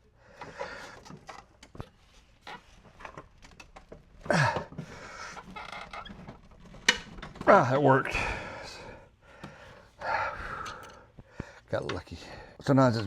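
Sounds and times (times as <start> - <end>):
socket wrench straining: 9.4 - 11.2.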